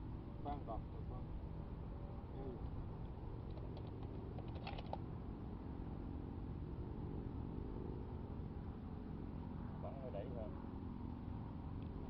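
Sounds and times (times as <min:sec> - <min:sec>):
rifle metallic clicks and rattle: 0:03.5 - 0:05.0.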